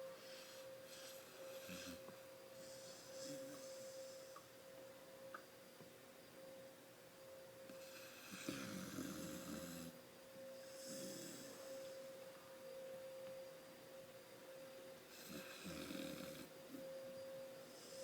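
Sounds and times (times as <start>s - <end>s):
steady high hum: 0.0s - 18.0s
dog snoring: 0.2s - 4.5s, 7.7s - 10.0s, 10.6s - 12.0s, 15.1s - 16.6s, 17.7s - 18.0s.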